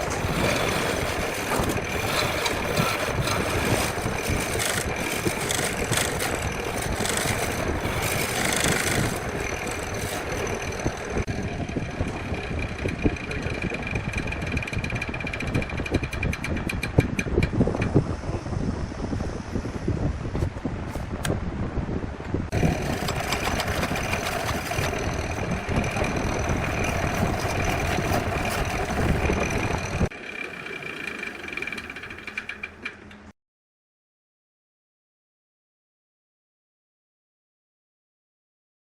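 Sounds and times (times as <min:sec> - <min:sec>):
lathe tool scraping wood: 0:00.0 - 0:16.2, 0:22.5 - 0:33.0
lathe motor hum: 0:00.0 - 0:16.4, 0:22.5 - 0:33.3.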